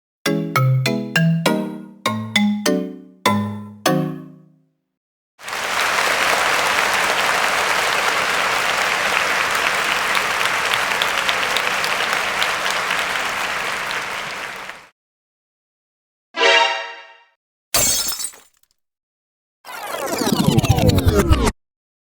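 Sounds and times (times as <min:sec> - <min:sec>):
crowd applauding: 0:05.4 - 0:14.9.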